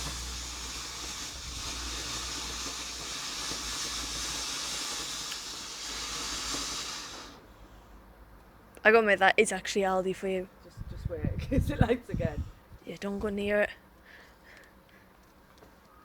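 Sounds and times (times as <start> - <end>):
ground firework hissing: 0.0 - 8.1.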